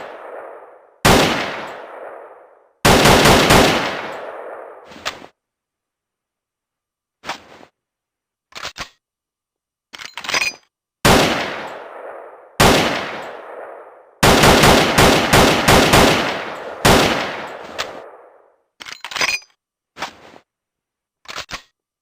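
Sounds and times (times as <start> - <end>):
rifle shots echoing: 0.0 - 4.9, 11.0 - 18.5.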